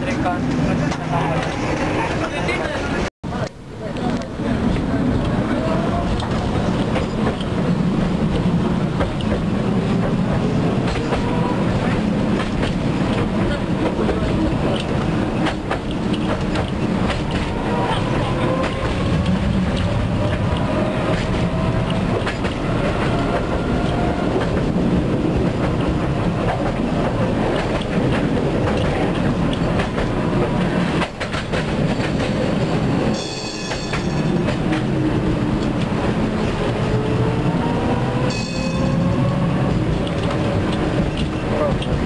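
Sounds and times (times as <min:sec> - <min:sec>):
tram wheels knocking over rail joints: 0:06.0 - 0:36.7
tram motor whine: 0:06.1 - 0:42.0
high ringing tone: 0:33.1 - 0:34.4, 0:38.3 - 0:39.1.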